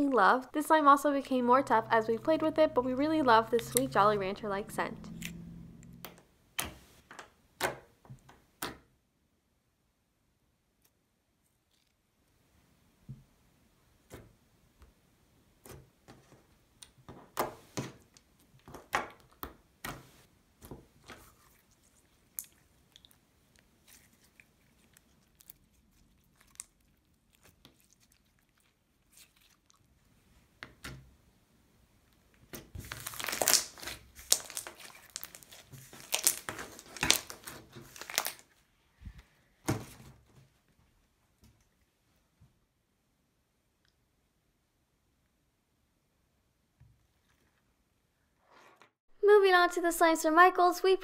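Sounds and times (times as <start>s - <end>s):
slime squished by hand: 32.4s - 38.5s.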